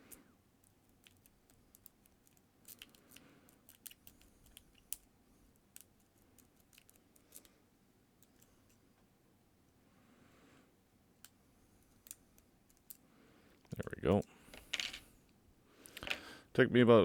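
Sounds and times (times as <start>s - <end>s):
lock pick clicking and scraping: 1.0s - 5.1s.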